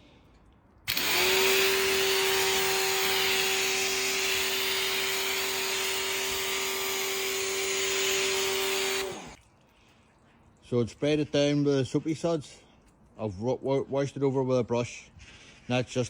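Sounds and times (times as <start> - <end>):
pressure washer motor humming: 0.9 - 9.4.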